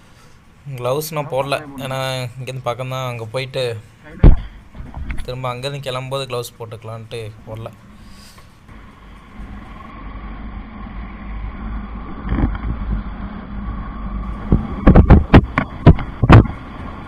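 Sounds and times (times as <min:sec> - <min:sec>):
loud sharp thumps: 0:04.2 - 0:05.3, 0:12.1 - 0:17.0
wind rumble: 0:04.2 - 0:05.4, 0:08.7 - 0:17.0
motorcycle engine: 0:08.7 - 0:17.0.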